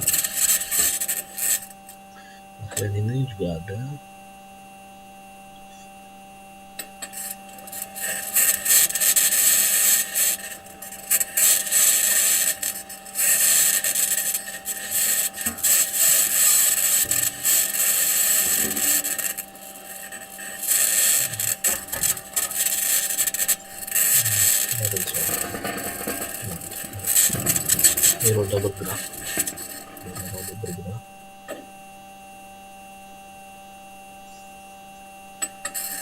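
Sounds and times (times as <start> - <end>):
metal wheels scraping over rock: 0.0 - 1.7, 7.0 - 31.0, 35.6 - 36.0
low steady hum: 0.0 - 36.0.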